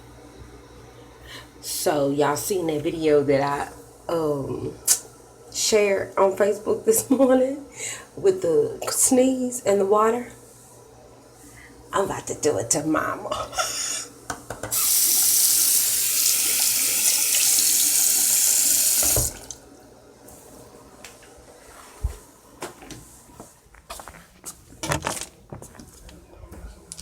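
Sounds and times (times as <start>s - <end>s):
water tap running: 14.7s - 19.6s
tap shutting off: 19.0s - 19.6s.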